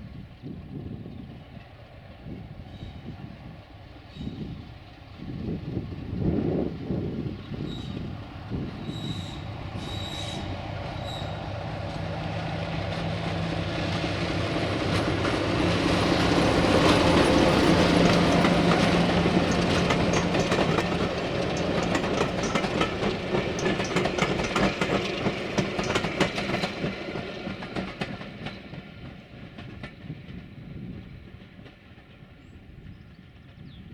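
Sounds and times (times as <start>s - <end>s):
diesel locomotive engine: 0.0s - 33.9s
wheels clicking over rail joints: 7.4s - 30.5s.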